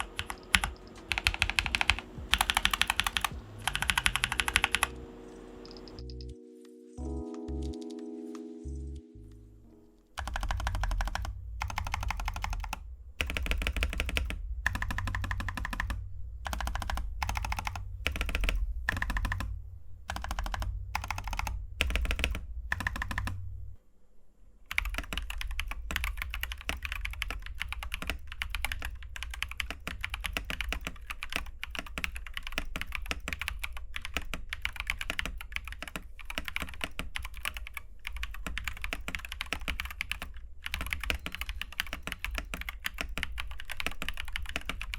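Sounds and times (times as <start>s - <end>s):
typing on mechanical keyboard: 0.0s - 5.0s, 10.2s - 19.5s, 20.1s - 23.4s, 24.7s - 44.9s.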